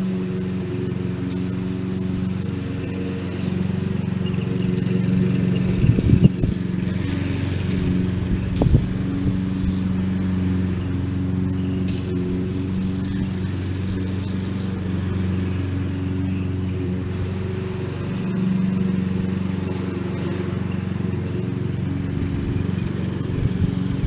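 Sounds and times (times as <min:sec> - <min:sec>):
lawn mower engine running: 0:00.0 - 0:24.0.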